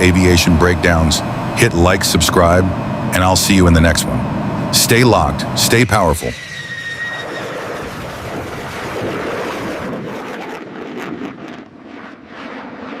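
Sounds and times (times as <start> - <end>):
steady rushing noise: 0.0 - 13.0.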